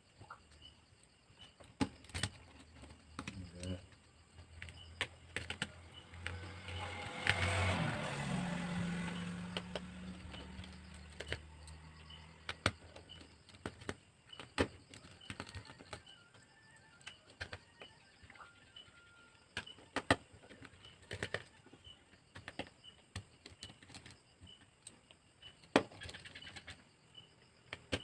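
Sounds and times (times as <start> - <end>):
motor vehicle passing: 4.7 - 13.3.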